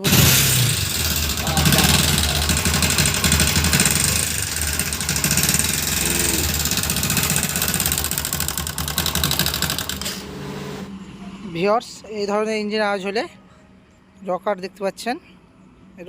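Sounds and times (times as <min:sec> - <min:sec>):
metallic ticking clatter: 0:00.0 - 0:10.1
motorcycle engine idling: 0:00.0 - 0:10.3.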